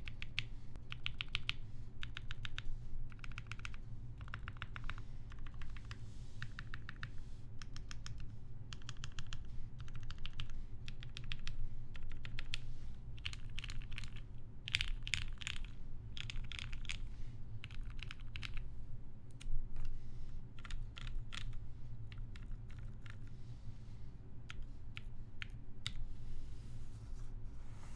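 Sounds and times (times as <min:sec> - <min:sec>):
mechanical keyboard typing: 0:00.0 - 0:12.6, 0:13.2 - 0:17.0, 0:17.6 - 0:18.6, 0:20.6 - 0:23.3.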